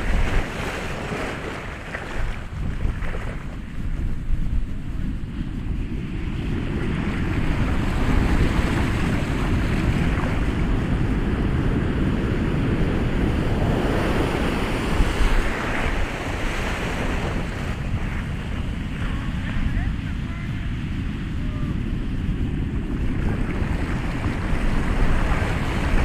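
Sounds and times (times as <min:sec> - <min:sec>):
ocean waves rushing surf: 0:00.0 - 0:26.0.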